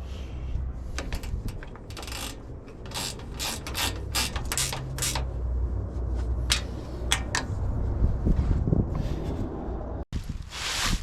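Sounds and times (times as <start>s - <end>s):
socket ratchet clicking: 1.0s - 5.4s.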